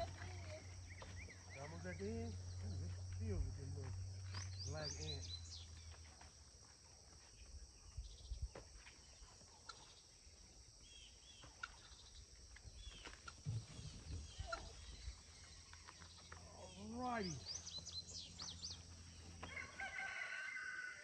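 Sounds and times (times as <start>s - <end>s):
high insect hum: 0.0s - 21.0s
bird chirps: 4.2s - 6.0s, 10.8s - 19.2s
low bumps and rustles: 12.8s - 15.2s.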